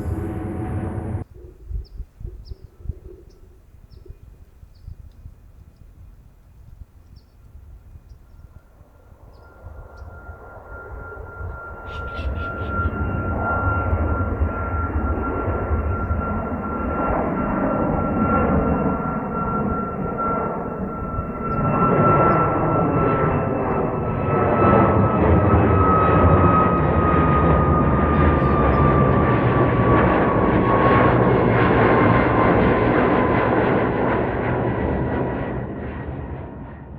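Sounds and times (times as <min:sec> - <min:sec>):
high fan whine: 0:00.0 - 0:01.3
jet engine roar: 0:00.0 - 0:01.3, 0:08.8 - 0:36.9.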